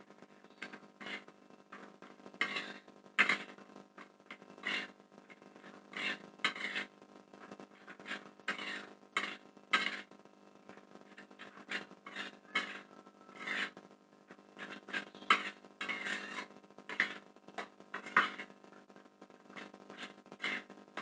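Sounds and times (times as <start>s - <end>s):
spatula scraping a pan: 0.4s - 21.0s.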